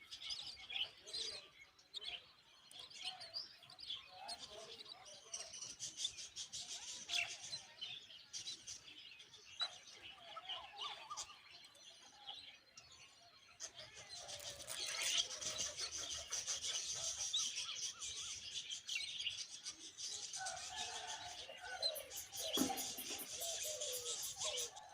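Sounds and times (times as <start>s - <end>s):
nestlings begging chirps: 20.5s - 24.8s
lower bird calls: 20.8s - 24.9s.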